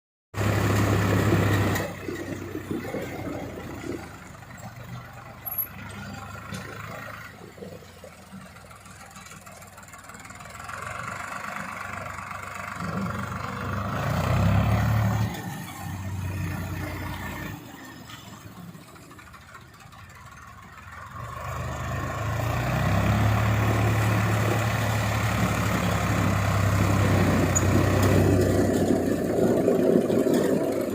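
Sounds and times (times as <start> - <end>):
vehicle engine running: 0.4 - 30.9.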